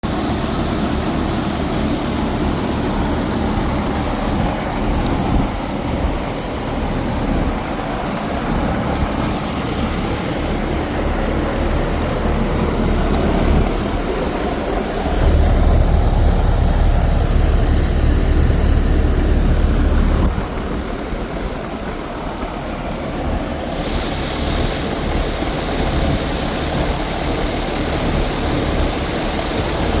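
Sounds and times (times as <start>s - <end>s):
air conditioner hissing and whirring: 0.0s - 30.0s
low rumble: 3.6s - 21.8s.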